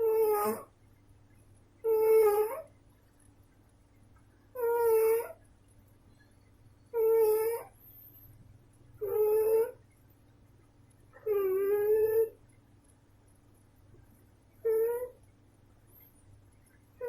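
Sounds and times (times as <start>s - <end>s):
cat snoring: 0.0s - 0.7s, 1.8s - 2.7s, 4.6s - 5.4s, 6.9s - 7.8s, 9.0s - 9.8s, 11.2s - 12.4s, 14.6s - 15.2s.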